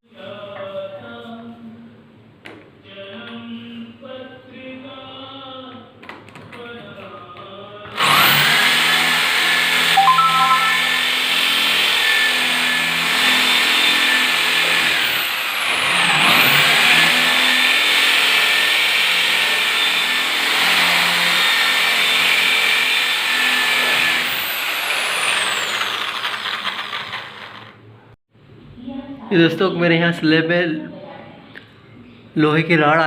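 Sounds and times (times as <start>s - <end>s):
hammer drill boring into concrete: 8.0s - 27.8s.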